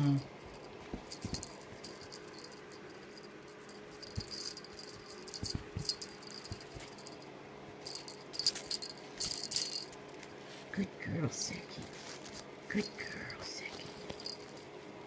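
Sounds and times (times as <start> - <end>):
jingling cat toy rattling: 0.0 - 10.0, 12.8 - 14.7
soft thumps: 0.5 - 2.5, 4.0 - 7.2.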